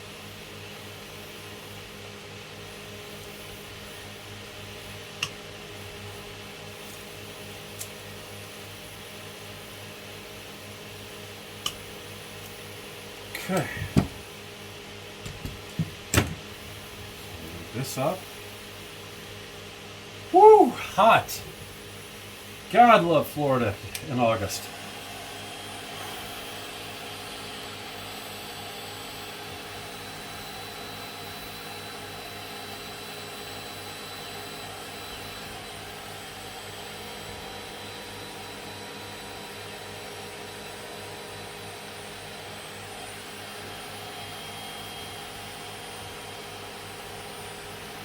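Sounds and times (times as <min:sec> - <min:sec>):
electric blower whirring: 0:13.3 - 0:14.4, 0:15.1 - 0:18.2.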